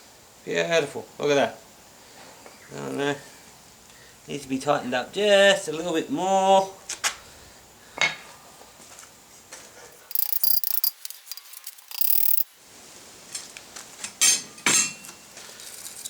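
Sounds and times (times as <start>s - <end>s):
metal clinking and rattling: 10.1s - 12.4s.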